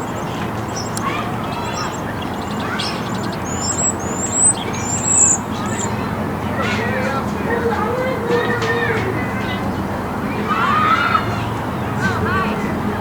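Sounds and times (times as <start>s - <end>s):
small birds chirping: 0.0s - 9.9s
steady background noise: 0.0s - 13.0s.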